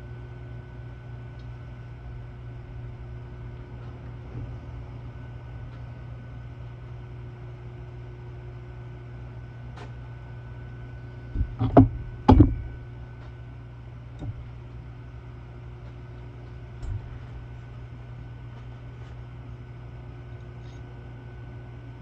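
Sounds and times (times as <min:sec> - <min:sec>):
steady mechanical hum: 0:00.0 - 0:22.0
tools knocking: 0:11.4 - 0:12.7.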